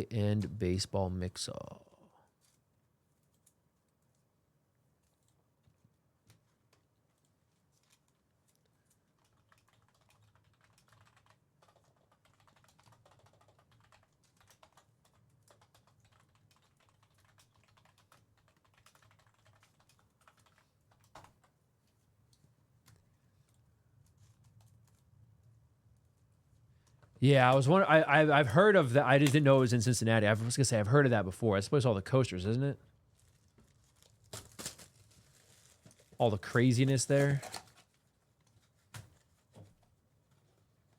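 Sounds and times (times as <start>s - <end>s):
typing on computer keyboard: 6.3s - 21.6s.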